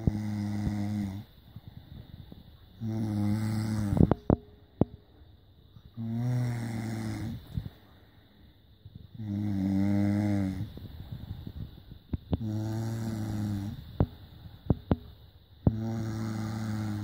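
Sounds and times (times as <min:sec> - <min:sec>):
person snoring: 0:00.0 - 0:01.3, 0:02.8 - 0:04.2, 0:06.0 - 0:07.6, 0:09.1 - 0:10.8, 0:12.4 - 0:13.9, 0:15.7 - 0:17.0.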